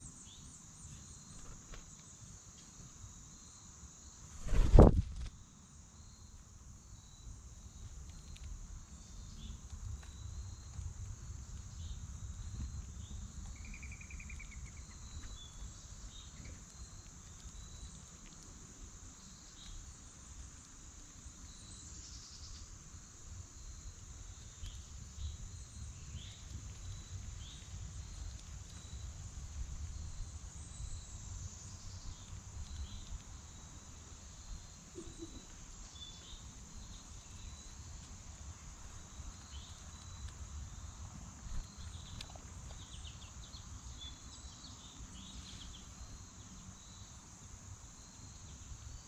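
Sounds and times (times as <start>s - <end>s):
high-pitched insect chorus: 0.0s - 49.0s
bird chirps: 34.9s - 36.4s.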